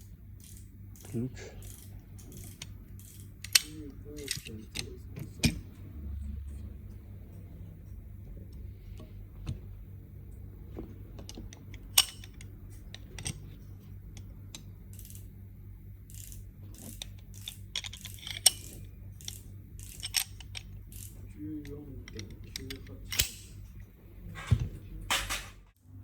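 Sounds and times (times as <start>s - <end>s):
steady low hum: 0.0s - 26.0s
metallic clicks of hand tools: 0.4s - 5.6s, 11.7s - 13.4s, 16.1s - 23.5s.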